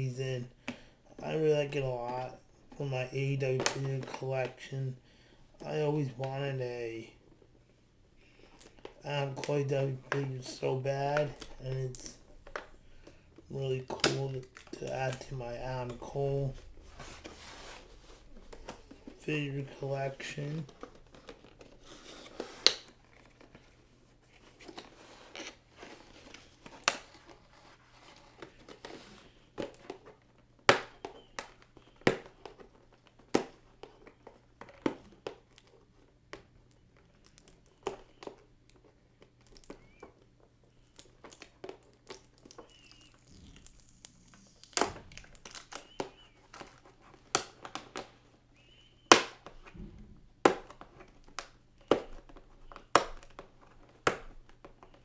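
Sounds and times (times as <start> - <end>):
faint steady hum: 0.0 - 20.8
packaging crinkling and tearing: 40.8 - 48.1.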